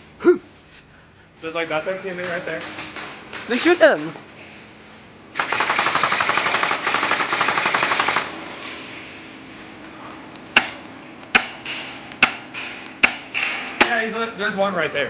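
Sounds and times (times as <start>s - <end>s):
airsoft gun full-auto burst: 5.4s - 8.4s.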